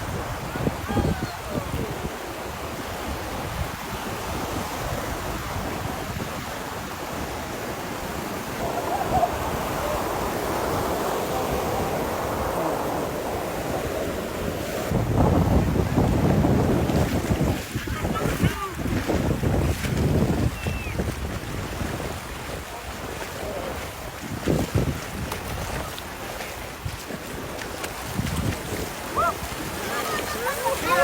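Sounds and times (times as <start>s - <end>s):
surf breaking on a beach: 0.0s - 31.0s
wind buffeting microphone: 0.0s - 31.0s.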